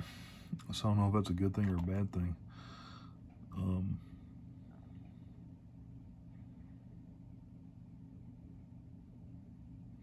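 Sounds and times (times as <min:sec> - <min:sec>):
low room hum: 0:00.0 - 0:10.0.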